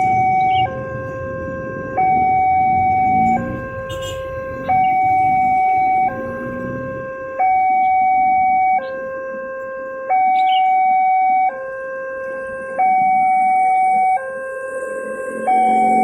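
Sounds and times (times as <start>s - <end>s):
two-tone crossing alarm: 0.0s - 16.0s.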